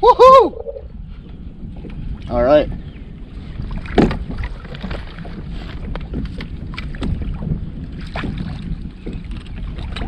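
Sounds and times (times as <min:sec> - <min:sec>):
water lapping at kayak hull: 0:00.0 - 0:10.0
wind on microphone: 0:00.0 - 0:10.0.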